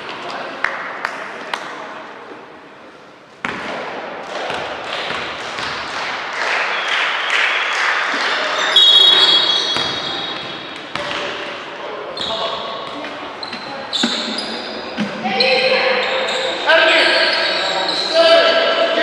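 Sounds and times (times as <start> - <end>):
players calling out: 6.7 - 19.0
loud high-pitched tone: 8.7 - 9.8
basketball bouncing on court: 8.8 - 11.3.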